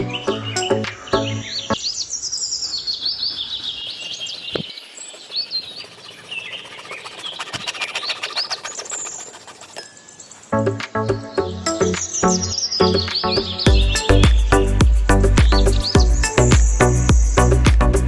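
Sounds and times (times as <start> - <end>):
fast ticking bird calls: 0.0 - 10.5, 11.4 - 17.6
small birds chirping: 0.0 - 18.0.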